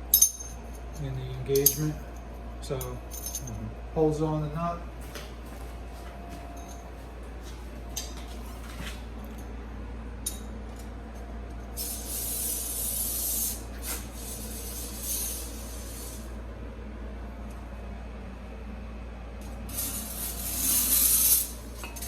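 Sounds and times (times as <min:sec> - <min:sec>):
low shop hum: 0:00.0 - 0:22.0
spraying hiss: 0:11.8 - 0:16.3, 0:19.7 - 0:21.7.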